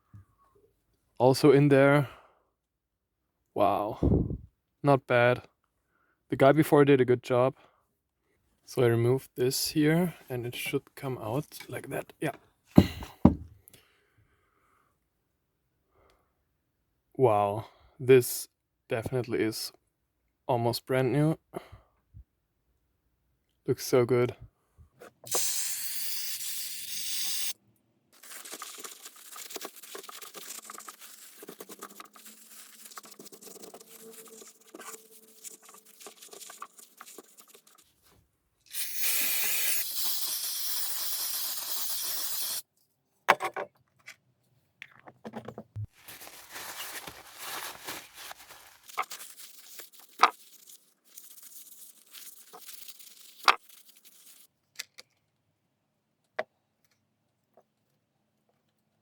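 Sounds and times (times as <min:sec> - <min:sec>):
hissing spray: 0:38.7 - 0:42.6
handling noises: 0:45.1 - 0:50.4.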